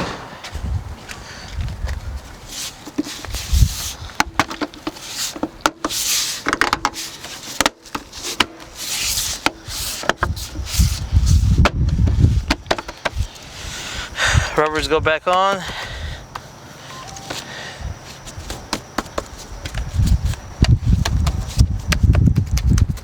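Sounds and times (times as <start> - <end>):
heavy thumps: 0.0 - 0.9
plastic rubbing and scraping: 2.3 - 13.4, 18.1 - 23.0.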